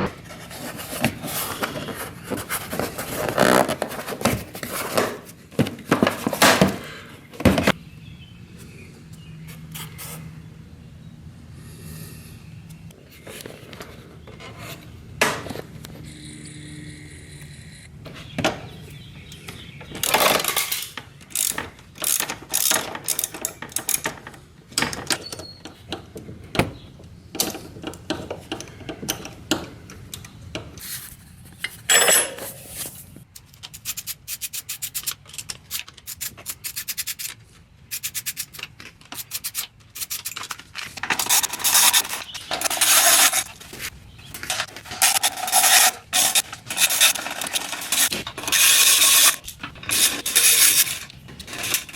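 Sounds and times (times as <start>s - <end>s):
ratchet wrench clicking: 37.9s - 38.6s.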